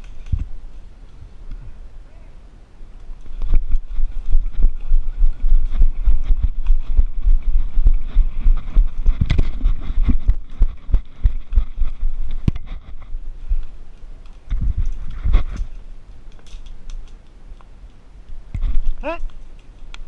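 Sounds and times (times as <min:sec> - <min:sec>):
camera thumps and rustling: 0:03.2 - 0:15.8, 0:18.6 - 0:20.0.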